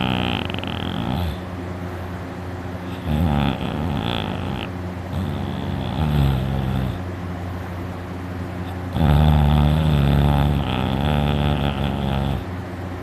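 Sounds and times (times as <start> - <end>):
person snoring loudly: 0.0 - 1.4, 2.9 - 7.1, 8.7 - 12.5.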